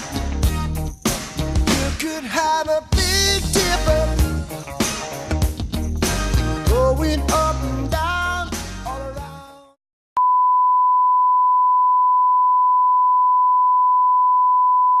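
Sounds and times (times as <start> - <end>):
music: 0.0 - 9.8
steady test tone beep: 10.2 - 15.0.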